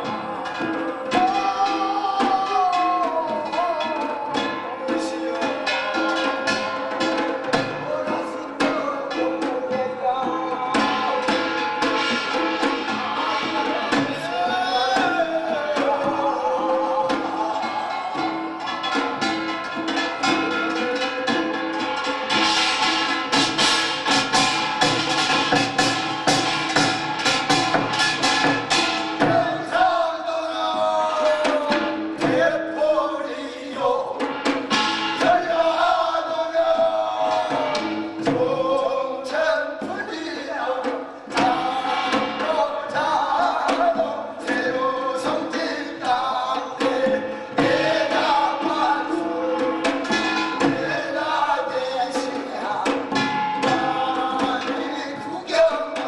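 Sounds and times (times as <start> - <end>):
man singing a chant: 0.0 - 11.9, 13.2 - 18.3, 29.2 - 34.3, 35.2 - 50.0, 50.6 - 56.0.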